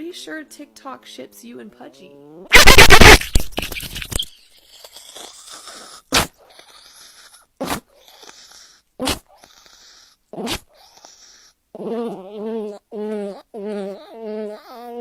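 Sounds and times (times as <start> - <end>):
loud sound: 2.5 - 4.1.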